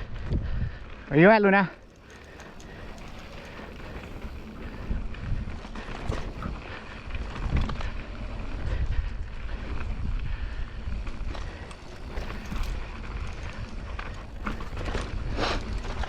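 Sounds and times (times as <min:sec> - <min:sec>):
wind buffeting microphone: 0:00.0 - 0:01.2, 0:01.8 - 0:16.0
bike tyres rolling over dirt: 0:00.0 - 0:16.0.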